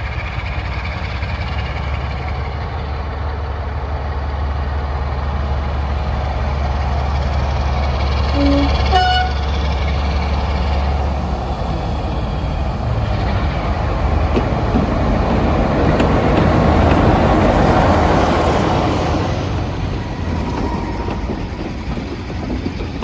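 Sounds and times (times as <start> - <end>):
diesel locomotive engine: 0.0 - 23.0
train noise: 0.0 - 23.0
high horn toot: 8.3 - 9.6.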